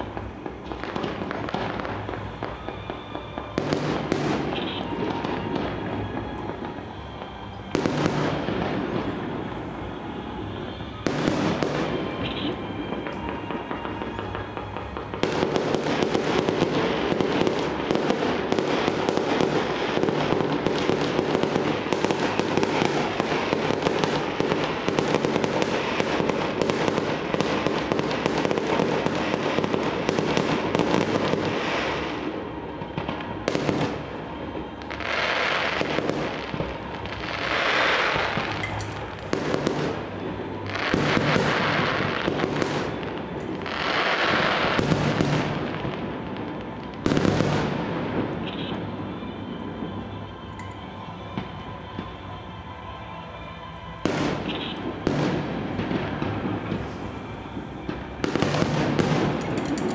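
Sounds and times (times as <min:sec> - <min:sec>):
fireworks banging and crackling: 0:00.0 - 0:59.9.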